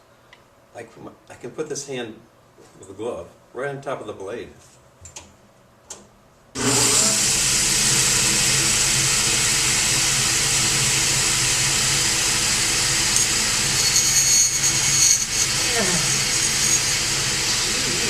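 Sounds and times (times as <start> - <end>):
table saw running: 6.6 - 18.0.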